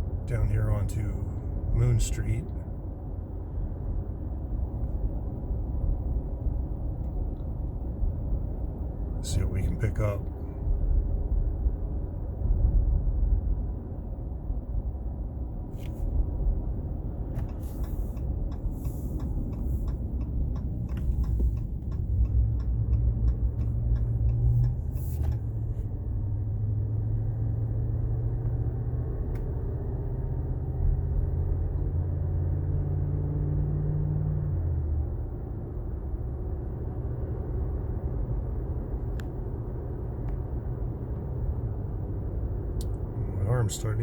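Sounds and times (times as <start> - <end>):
low hum: 0.0 - 33.5
road and driveline rumble: 0.0 - 44.0.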